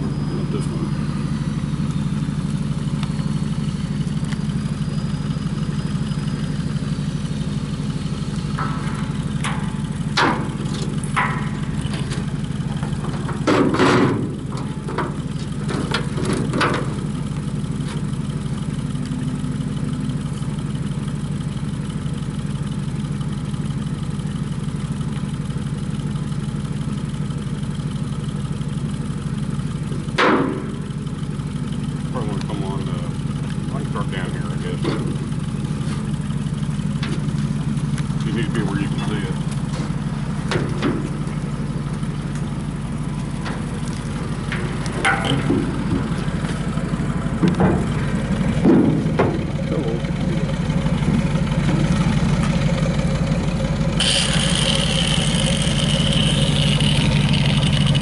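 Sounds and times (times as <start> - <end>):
small engine idling: 0.0 - 58.0
clatters and knocks: 8.4 - 18.2, 34.6 - 53.1.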